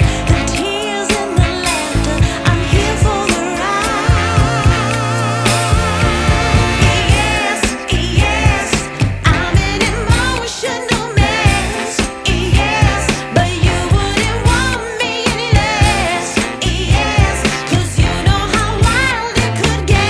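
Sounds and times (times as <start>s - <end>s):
music with vibrato melody: 0.0s - 8.9s.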